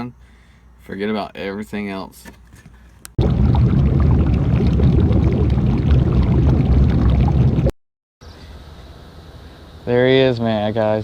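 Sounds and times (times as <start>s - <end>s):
loud low rumbling noise: 3.2s - 7.7s.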